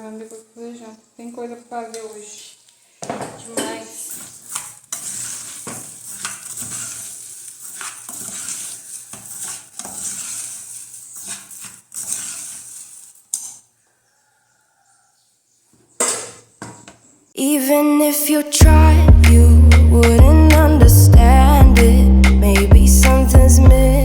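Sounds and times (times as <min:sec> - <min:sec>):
spoon scraping pan: 0:03.5 - 0:13.8
rice sizzling in oil: 0:04.1 - 0:13.6.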